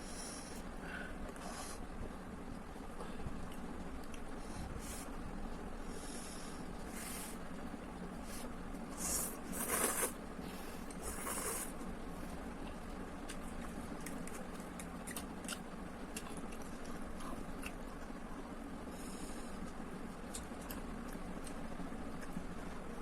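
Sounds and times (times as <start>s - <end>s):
steady low hum: 0.0s - 23.0s
person slurping noodles: 8.2s - 11.7s
wet chewing and mouth clicks: 8.3s - 18.2s, 19.6s - 22.9s.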